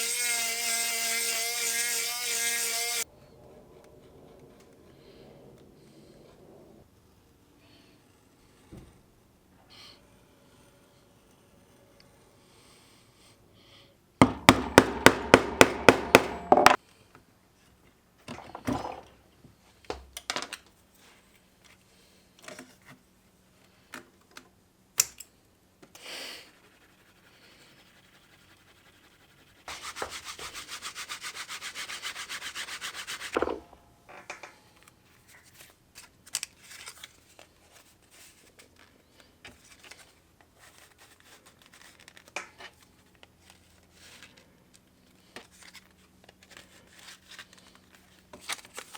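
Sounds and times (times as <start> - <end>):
tool rubbing leather: 0.0 - 3.0, 26.5 - 33.6.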